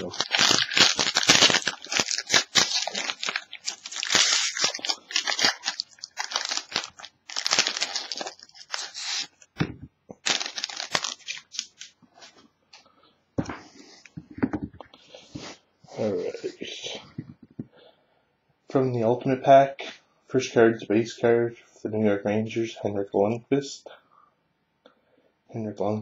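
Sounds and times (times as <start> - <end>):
wrapper tearing and crinkling: 0.0 - 9.4, 10.2 - 12.0.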